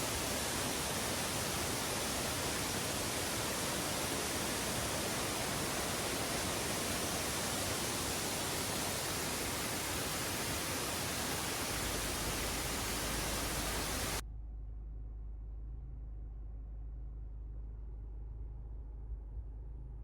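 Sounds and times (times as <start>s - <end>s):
waterfall roar: 0.0s - 14.2s
faint low hum: 0.0s - 20.0s.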